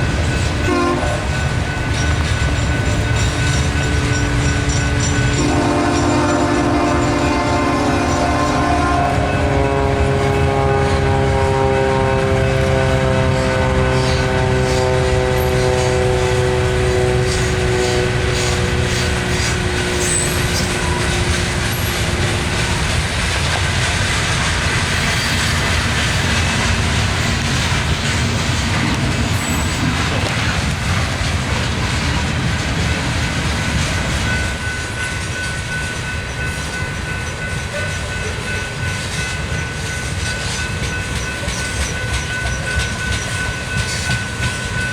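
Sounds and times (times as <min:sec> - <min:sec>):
diesel engines rumbling: 0:00.0 - 0:35.4
wheels clattering on rail joints: 0:00.0 - 0:44.9
train air horn chord: 0:00.6 - 0:01.4, 0:05.1 - 0:23.0.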